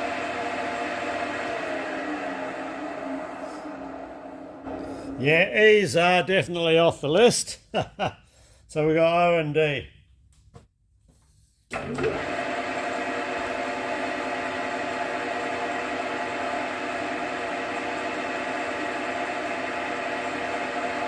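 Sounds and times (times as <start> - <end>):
metal lathe humming: 0.0 - 6.1, 11.7 - 21.0.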